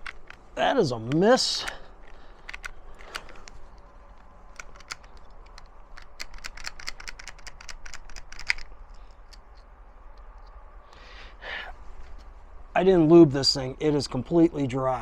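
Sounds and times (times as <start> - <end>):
rifle bolt action clicking: 0.0 - 0.4, 1.1 - 10.6.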